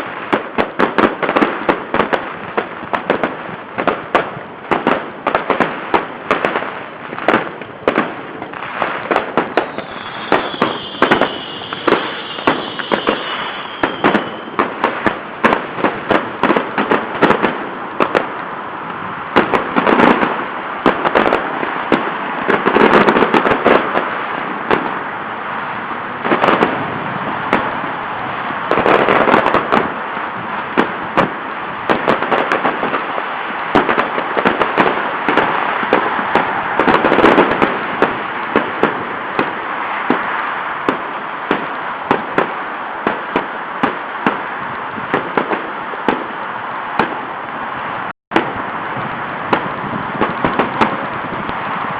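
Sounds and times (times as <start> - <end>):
crackling hiss: 0.0 - 51.9
fireworks bangs: 0.0 - 51.9
high firework whistle: 8.6 - 18.3.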